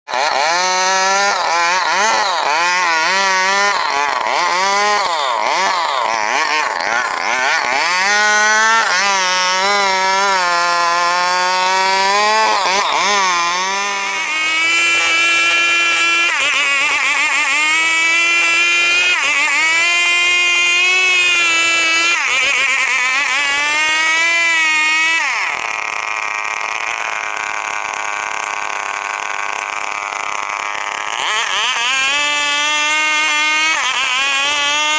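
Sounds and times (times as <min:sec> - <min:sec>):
chainsaw cutting a log: 0:00.1 - 0:34.9.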